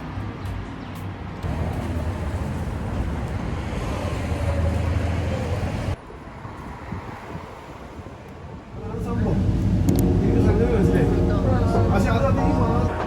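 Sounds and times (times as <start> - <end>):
vehicle engine and road rumble: 0.0 - 13.0.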